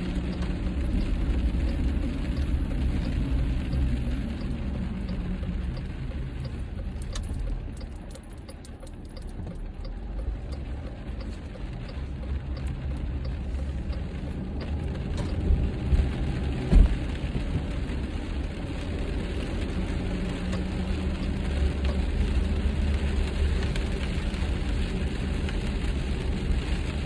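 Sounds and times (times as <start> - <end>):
rain hitting windshield: 0.0 - 27.0
tyres and engine rumble: 0.0 - 27.0
sharp ticks: 0.2 - 15.4.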